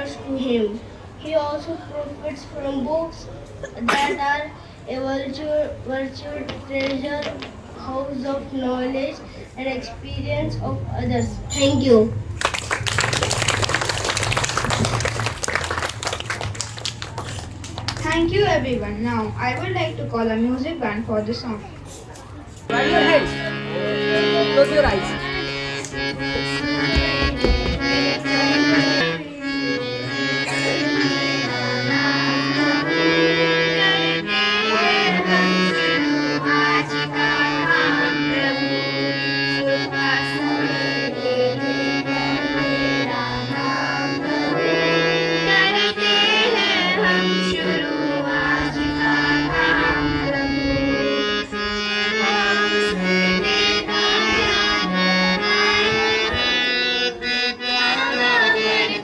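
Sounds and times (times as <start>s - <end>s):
school band playing: 22.7s - 59.0s.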